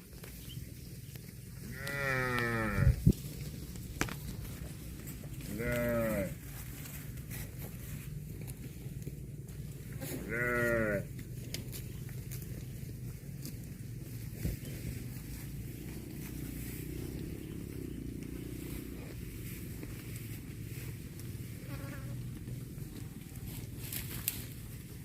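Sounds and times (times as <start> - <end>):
young farm animal bleating: 1.6 - 3.2, 5.2 - 6.6, 9.8 - 12.0, 21.5 - 22.6.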